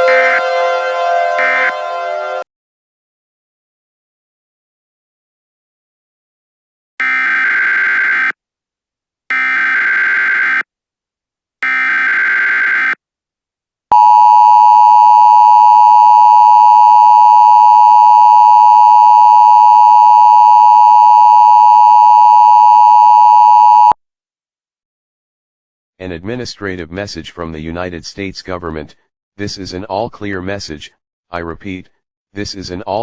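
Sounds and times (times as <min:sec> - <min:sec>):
dual-tone alarm: 0:00.0 - 0:02.4, 0:07.0 - 0:08.4, 0:09.3 - 0:10.7, 0:11.6 - 0:13.0, 0:13.9 - 0:24.0.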